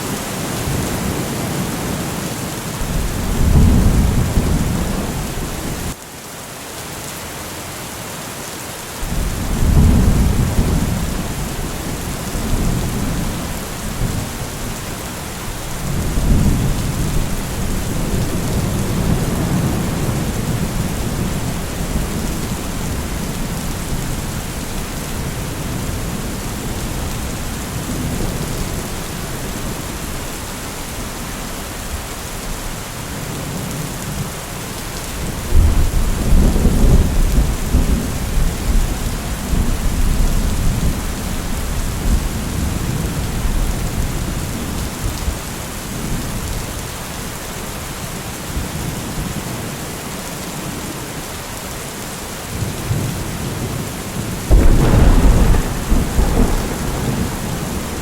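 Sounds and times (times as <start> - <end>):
steady rain: 0.0 - 58.0
rolling thunder: 2.8 - 6.0, 9.0 - 26.1, 54.4 - 58.0.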